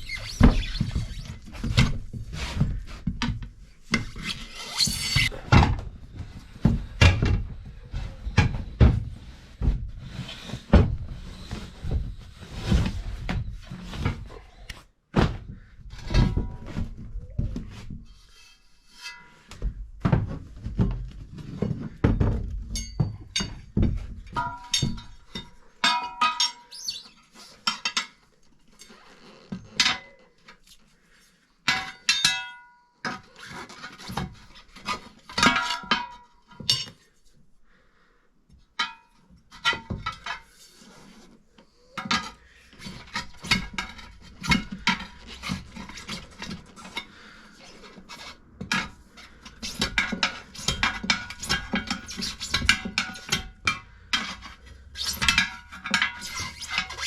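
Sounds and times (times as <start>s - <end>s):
metal tools clanking on wheel rim: 48.8s - 57.0s.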